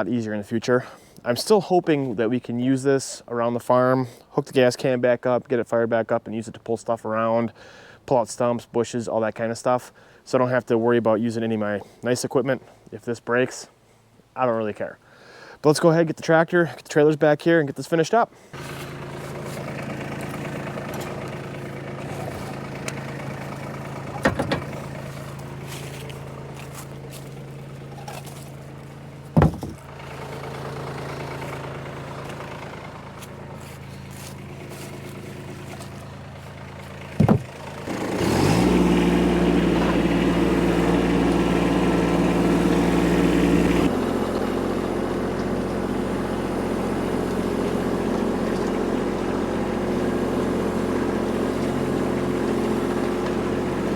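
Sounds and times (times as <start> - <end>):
tractor engine idling: 18.4 - 53.9
tractor engine revving: 18.6 - 53.9
sharp knocks: 29.4 - 29.8, 37.2 - 37.6.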